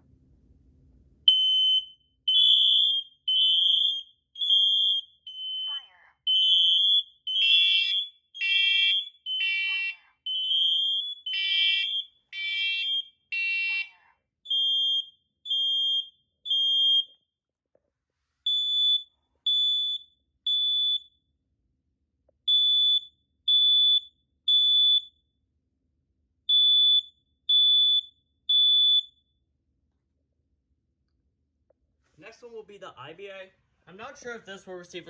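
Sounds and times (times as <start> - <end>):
smoke alarms beeping: 1.3 - 17.1, 18.5 - 21.1, 22.5 - 25.1, 26.5 - 29.2.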